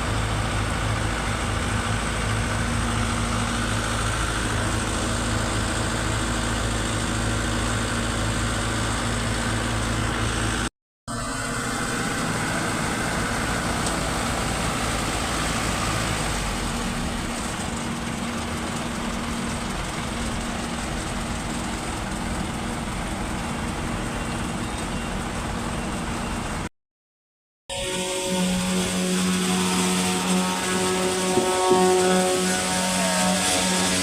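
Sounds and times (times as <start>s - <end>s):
diesel engine humming: 0.0s - 26.7s, 27.7s - 34.0s.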